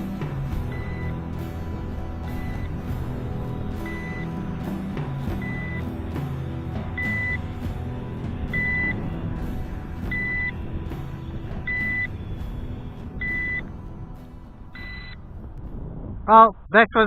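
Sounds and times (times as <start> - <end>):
low rumble: 0.0 - 17.0
high warning beeps: 0.6 - 1.2, 3.8 - 4.4, 5.4 - 5.9, 7.0 - 7.5, 8.5 - 9.0, 10.1 - 10.6, 11.7 - 12.1, 13.2 - 13.7, 14.8 - 15.2.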